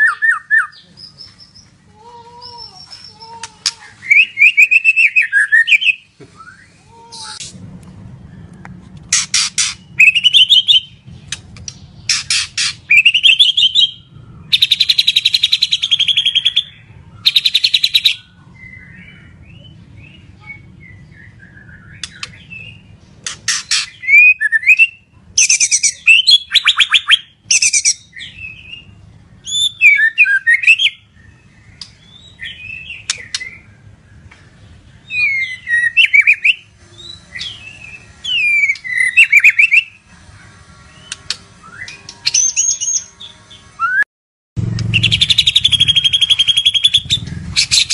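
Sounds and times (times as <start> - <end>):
bird singing trills and whistles: 0.0 - 1.7, 2.4 - 7.5, 8.3 - 34.3, 35.0 - 40.0, 40.9 - 44.0, 44.8 - 47.9.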